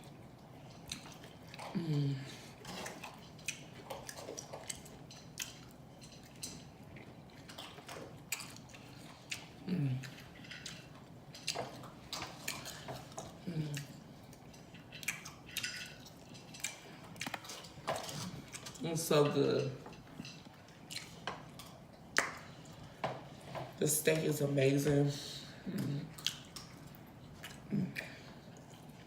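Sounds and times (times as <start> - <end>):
wet mouth chewing: 0.3 - 1.8, 2.5 - 18.8, 19.9 - 23.0, 25.7 - 29.0
person humming mmm: 1.7 - 2.5, 9.6 - 10.1, 13.4 - 13.9.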